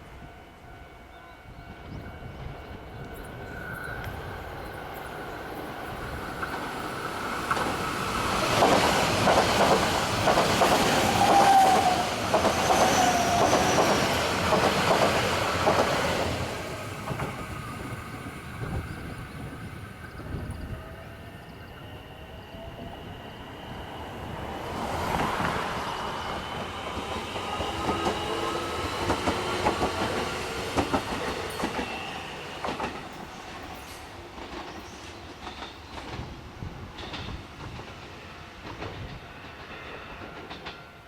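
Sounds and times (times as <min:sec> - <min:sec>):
train wheels clicking over rail joints: 0:06.4 - 0:16.4, 0:26.6 - 0:32.0, 0:32.6 - 0:40.9
train wheel squeal: 0:09.7 - 0:36.2, 0:36.9 - 0:41.0.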